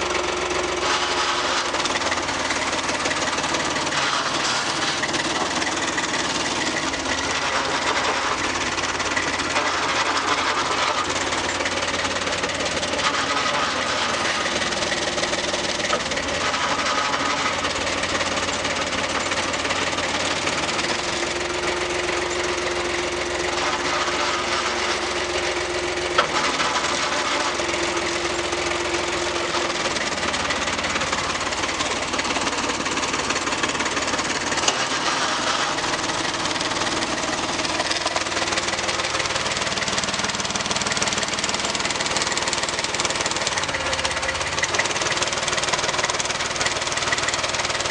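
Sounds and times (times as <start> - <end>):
knocking rattling mechanical noise: 0.0 - 47.9
tractor diesel engine running: 0.0 - 47.9.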